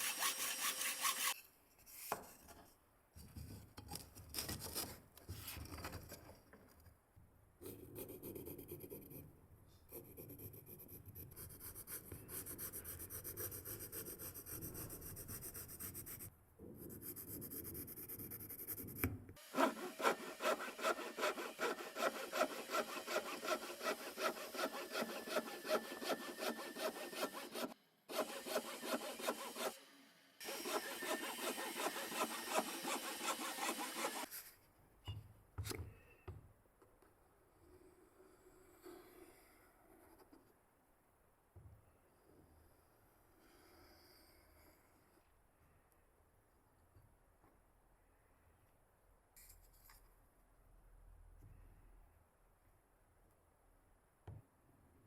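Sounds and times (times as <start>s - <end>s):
hand tool strokes on wood: 0.0s - 1.4s, 19.4s - 29.8s, 30.4s - 34.4s.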